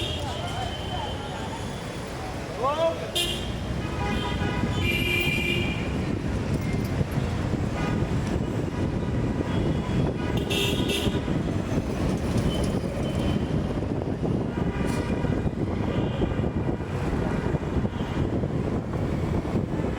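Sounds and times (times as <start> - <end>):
road traffic noise: 0.0 - 19.9
vehicle horns honking: 3.2 - 6.0, 9.5 - 11.4.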